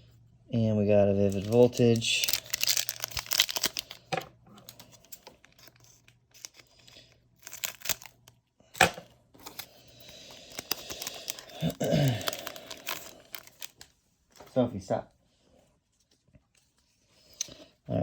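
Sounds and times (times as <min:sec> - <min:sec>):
foil wrapper tearing and crinkling: 0:01.2 - 0:13.9.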